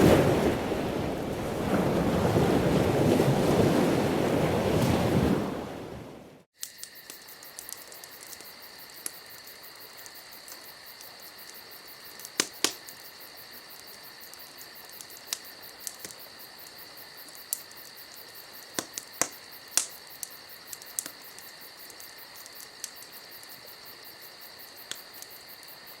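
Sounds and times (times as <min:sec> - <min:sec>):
insect chirping: 0:06.6 - 0:26.0.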